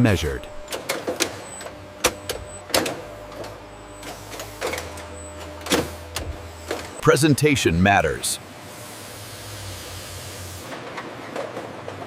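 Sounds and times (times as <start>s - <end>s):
machinery humming and whining: 0.0s - 12.0s.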